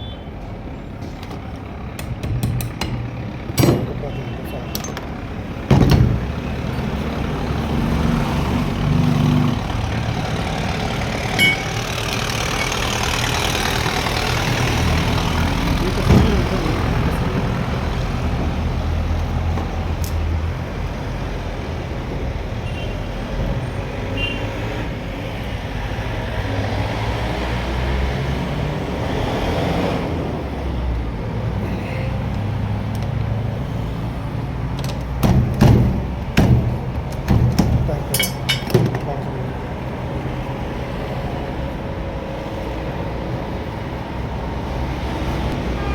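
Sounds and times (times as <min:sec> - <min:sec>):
vehicles passing: 0:00.0 - 0:45.9
sharp clicks or knocks: 0:01.0 - 0:04.0.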